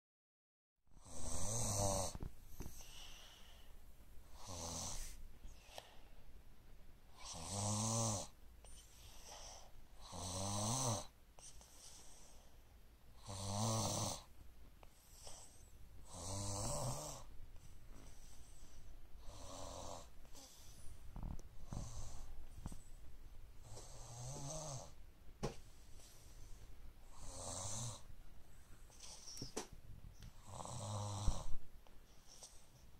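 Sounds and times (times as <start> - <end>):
person snoring: 1.0 - 3.4, 4.3 - 5.2, 7.2 - 8.3, 10.0 - 11.1, 13.2 - 14.3, 16.0 - 17.3, 19.2 - 22.3, 23.6 - 25.0, 27.1 - 28.1, 30.4 - 31.6.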